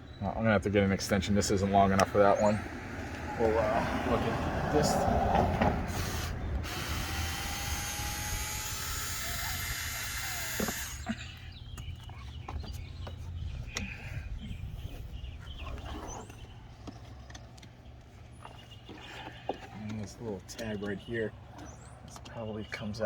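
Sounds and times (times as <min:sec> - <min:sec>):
cordless drill running: 0:05.9 - 0:11.2.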